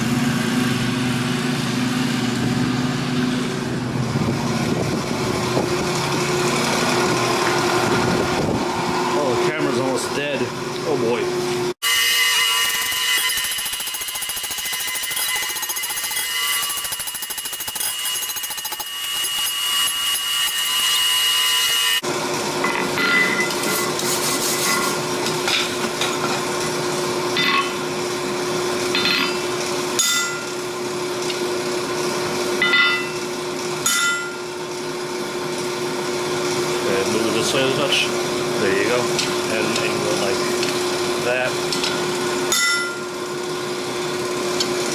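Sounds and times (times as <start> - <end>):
power tool high whine: 11.8 - 22.1.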